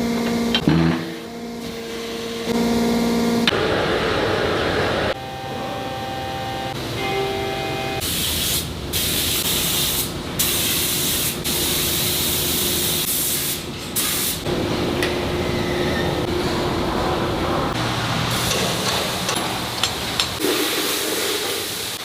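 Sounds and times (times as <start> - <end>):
machine whine: 0.0 - 8.0
loud hissing spray: 8.0 - 14.4, 20.4 - 22.0.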